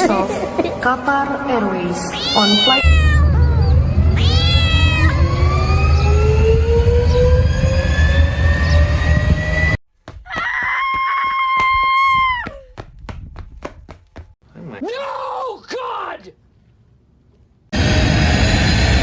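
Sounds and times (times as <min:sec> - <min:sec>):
cat meow: 0:02.1 - 0:05.2
jet engines spooling up: 0:03.7 - 0:09.8, 0:17.8 - 0:19.0
long high-pitched cry: 0:04.2 - 0:05.2.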